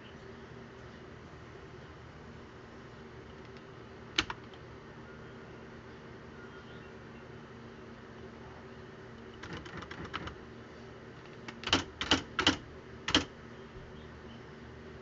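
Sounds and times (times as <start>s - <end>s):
typewriter hum: 3.3s - 4.6s, 9.3s - 10.4s, 11.2s - 13.3s
electric typewriter typing: 4.2s - 4.6s, 9.3s - 10.4s, 11.4s - 13.3s.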